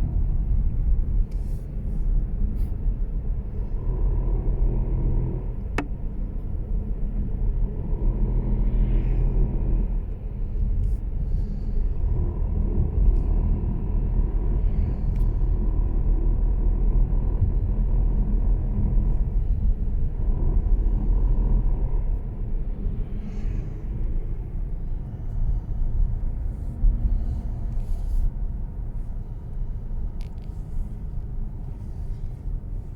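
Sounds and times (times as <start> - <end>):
steady low car rumble: 0.0 - 32.9.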